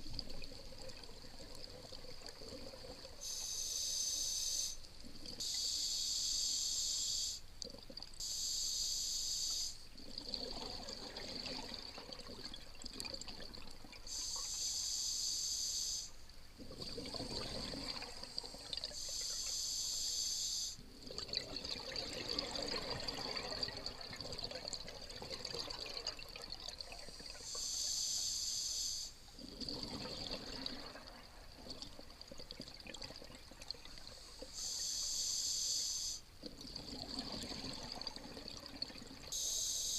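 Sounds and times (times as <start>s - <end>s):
exhaled bubbles gurgling: 0.0s - 3.4s, 9.9s - 14.5s, 16.6s - 19.2s, 20.8s - 27.5s, 29.4s - 34.5s, 36.4s - 39.6s
regulator hissing inhalation: 3.2s - 4.8s, 5.4s - 7.4s, 8.2s - 9.8s, 14.1s - 16.2s, 19.0s - 20.8s, 27.4s - 29.2s, 34.3s - 36.3s, 39.3s - 39.9s.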